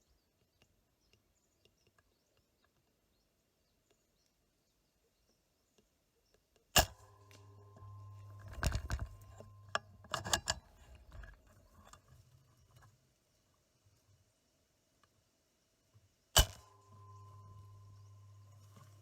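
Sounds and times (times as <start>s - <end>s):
low hum: 6.8s - 12.9s, 16.4s - 19.0s
metallic clicks and rattles: 6.8s - 13.0s.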